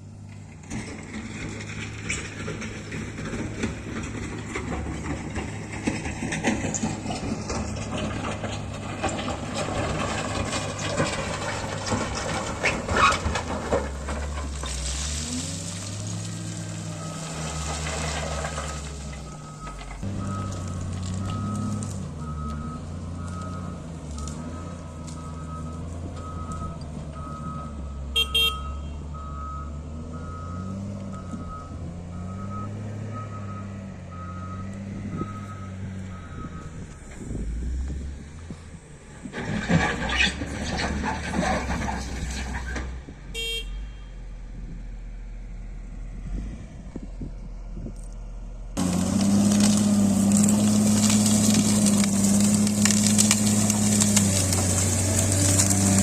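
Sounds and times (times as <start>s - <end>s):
diesel engine working under load: 0.0s - 56.0s
rough clattering: 0.2s - 22.3s, 37.0s - 43.0s, 48.8s - 56.0s
reversing alarm beeps: 19.3s - 36.8s.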